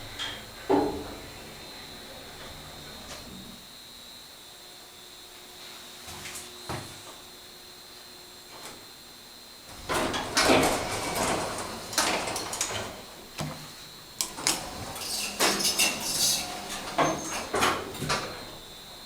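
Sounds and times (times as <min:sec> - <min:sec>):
elevator doors clunking and rattling: 0:00.0 - 0:03.7, 0:09.7 - 0:19.0.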